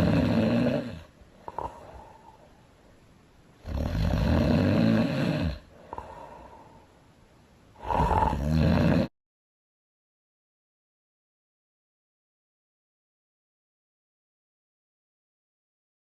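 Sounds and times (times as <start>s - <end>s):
woman snoring loudly: 0.0s - 2.1s, 3.6s - 6.5s, 7.8s - 9.1s
faint breath: 1.2s - 2.8s, 5.7s - 7.0s.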